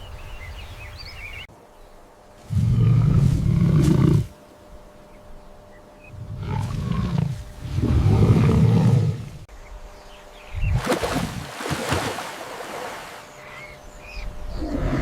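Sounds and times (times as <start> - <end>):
large animal roaring: 6.1 - 9.4.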